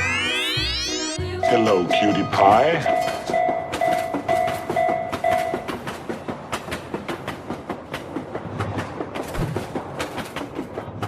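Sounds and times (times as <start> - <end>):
railroad crossing warning bell: 1.2 - 5.8
train wheels clattering over rails: 2.8 - 11.0.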